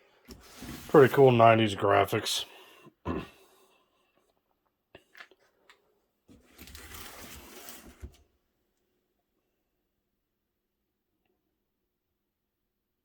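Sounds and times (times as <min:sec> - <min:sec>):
cardboard rubbing and rustling: 0:06.4 - 0:08.2.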